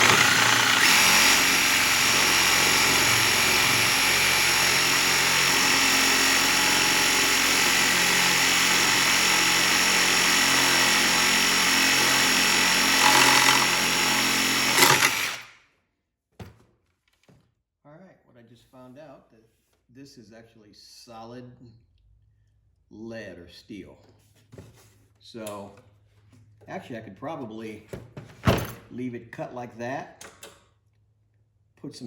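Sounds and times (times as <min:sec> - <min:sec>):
power tool cutting metal: 0:00.0 - 0:15.5.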